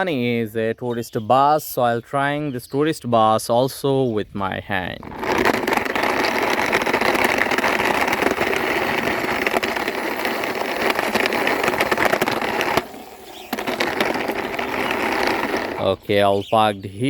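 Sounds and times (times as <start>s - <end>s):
toy bus wheels rolling and rattling: 5.0s - 16.6s.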